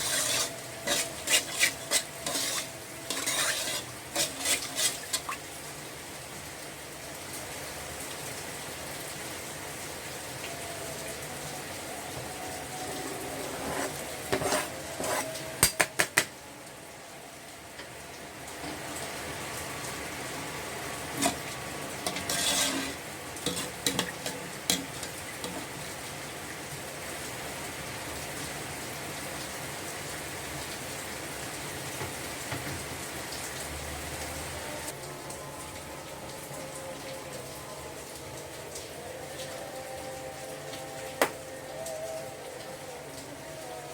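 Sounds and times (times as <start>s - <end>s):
metal utensil scraping cookware: 0.0s - 5.3s, 13.3s - 15.9s, 21.1s - 25.7s
frying sizzle: 0.0s - 43.9s.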